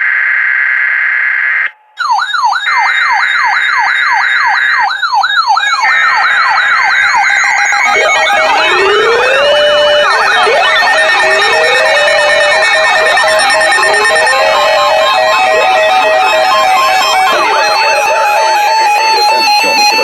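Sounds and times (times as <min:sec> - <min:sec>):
electronic sirens wailing: 0:00.0 - 0:20.0
digital data burst: 0:02.0 - 0:20.0
slow rising siren glides: 0:02.0 - 0:20.0.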